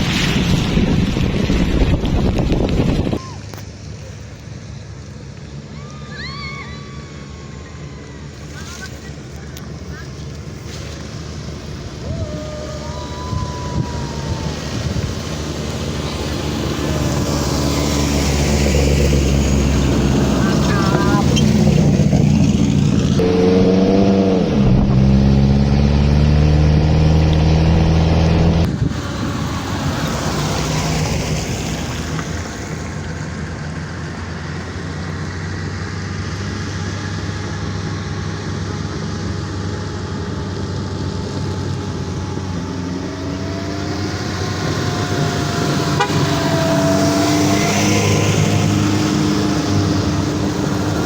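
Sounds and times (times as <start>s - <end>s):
off-road vehicle engine running: 0.0s - 51.0s.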